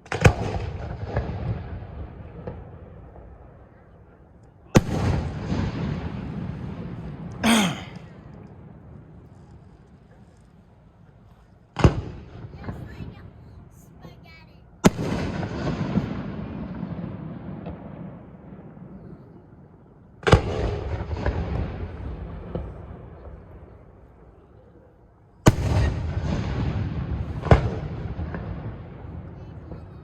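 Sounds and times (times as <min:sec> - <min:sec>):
fireworks booms with echo: 0:00.0 - 0:03.8, 0:04.7 - 0:09.0, 0:11.7 - 0:13.4, 0:14.8 - 0:19.3, 0:20.2 - 0:23.9, 0:25.5 - 0:30.0.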